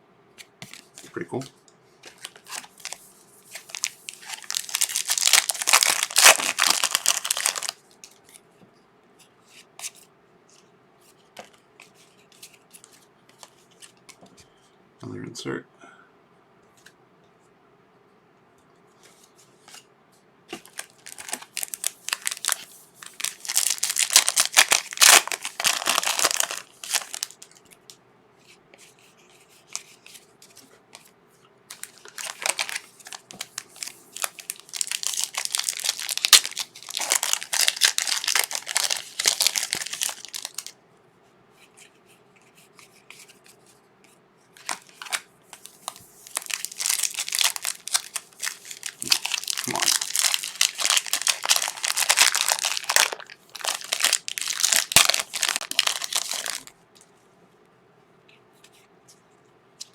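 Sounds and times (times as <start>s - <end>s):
card pack wrapper tearing and crinkling: 2.1s - 8.2s, 20.6s - 27.6s, 31.7s - 40.7s, 44.6s - 56.7s.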